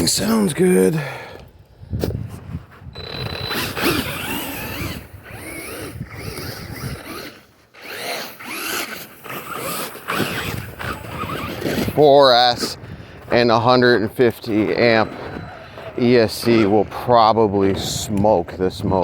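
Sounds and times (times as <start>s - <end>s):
toy truck motor whining: 3.0s - 12.0s.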